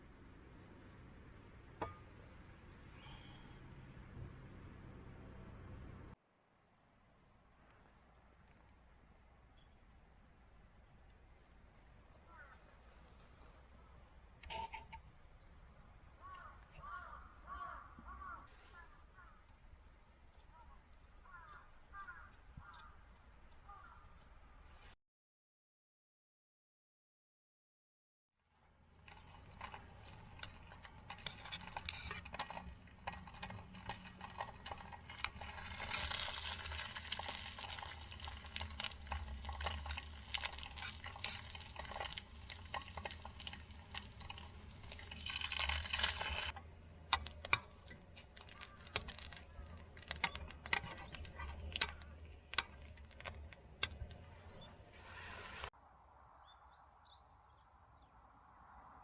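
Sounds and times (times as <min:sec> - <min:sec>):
wood fire crackling and popping: 0:28.6 - 0:55.7
brief hissing rushes: 0:55.0 - 0:55.7.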